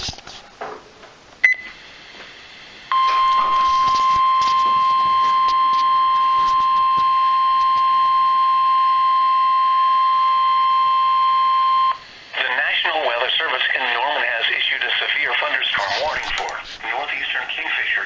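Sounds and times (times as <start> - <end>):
alarm tone: 2.9 - 12.0.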